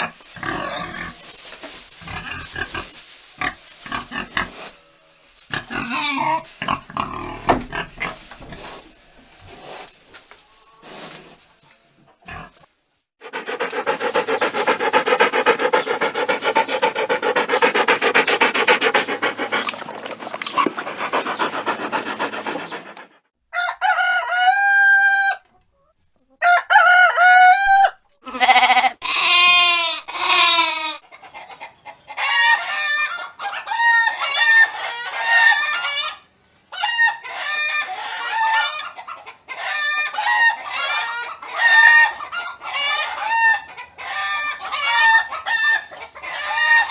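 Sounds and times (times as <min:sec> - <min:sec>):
flock of chickens clucking: 0:13.2 - 0:23.2, 0:31.0 - 0:46.9
hen clucking: 0:13.2 - 0:23.2
rooster crowing: 0:23.6 - 0:25.3, 0:26.4 - 0:27.9.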